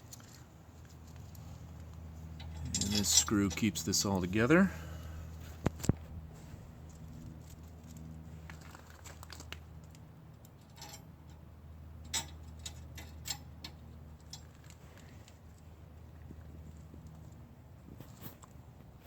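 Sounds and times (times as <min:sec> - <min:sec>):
steady low hum: 0:00.0 - 0:19.0
metal parts clicking and tapping: 0:00.1 - 0:03.8, 0:06.9 - 0:11.4, 0:12.0 - 0:15.1.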